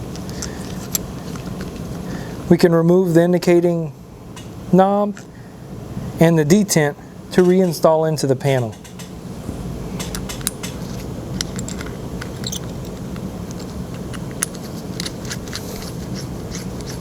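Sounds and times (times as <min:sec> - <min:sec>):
steady low hum: 0:00.0 - 0:17.0
small metal parts clinking: 0:00.1 - 0:01.8, 0:10.0 - 0:17.0.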